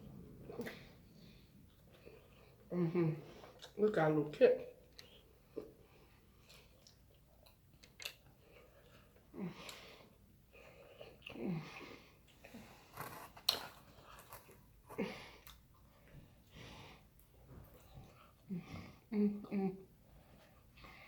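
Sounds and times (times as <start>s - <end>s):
close chewing: 3.4s - 3.8s, 4.7s - 9.3s.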